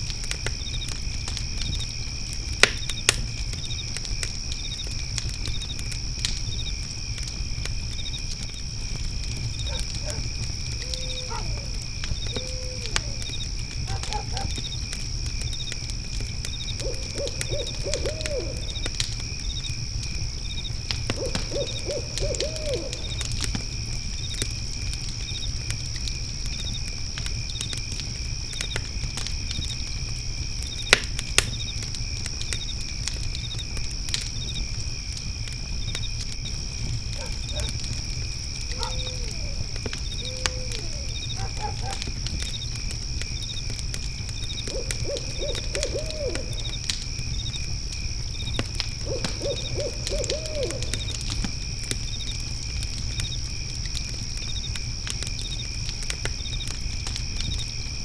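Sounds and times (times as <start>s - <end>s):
crackling fire: 0.0s - 58.0s
crickets trilling: 0.0s - 58.0s
fire popping: 0.0s - 58.0s
owl hooting: 9.7s - 13.3s, 16.8s - 18.8s, 21.2s - 23.2s, 38.7s - 42.0s, 44.7s - 46.8s, 49.0s - 51.1s.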